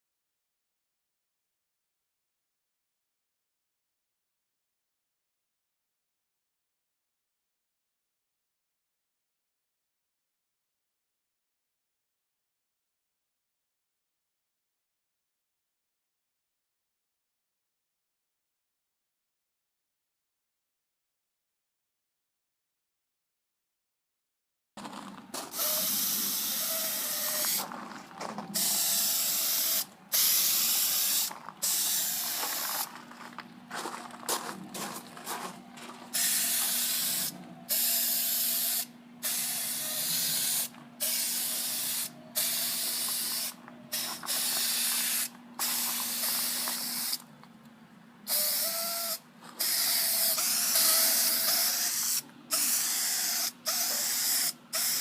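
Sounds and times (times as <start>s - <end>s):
aerosol spray can hissing: 25.5s - 27.6s, 28.6s - 32.9s, 36.1s - 47.2s, 48.3s - 55.0s.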